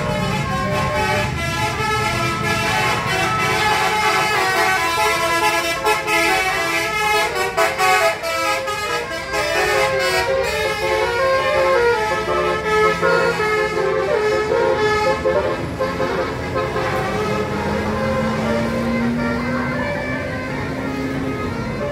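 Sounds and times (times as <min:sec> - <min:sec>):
bus musical horn playing tune: 0:00.0 - 0:21.9.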